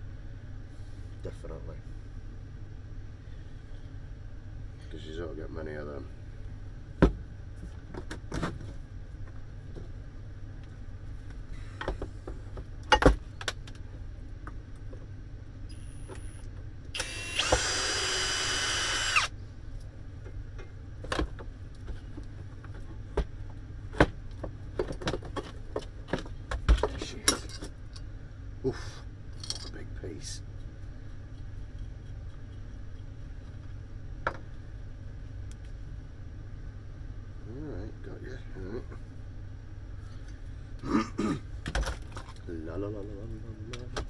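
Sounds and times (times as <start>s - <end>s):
power drill running: 17.0s - 19.3s
metal parts and tools clinking: 29.4s - 29.8s.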